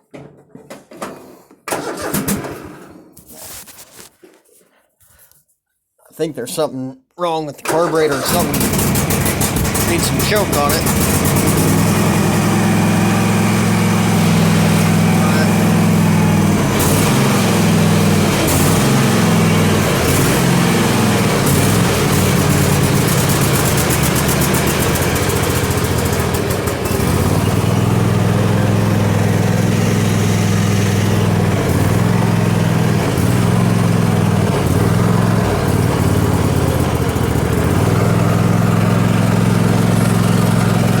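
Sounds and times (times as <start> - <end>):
lawn tractor engine running: 1.7 - 2.9, 7.6 - 41.0
person talking: 6.0 - 8.8, 9.7 - 11.7, 14.6 - 15.7.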